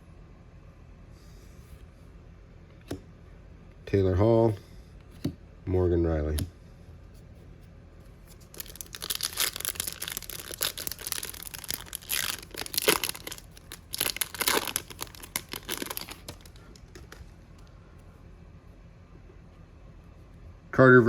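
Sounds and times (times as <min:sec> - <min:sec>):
plastic wrapper crinkling: 0:08.3 - 0:17.7.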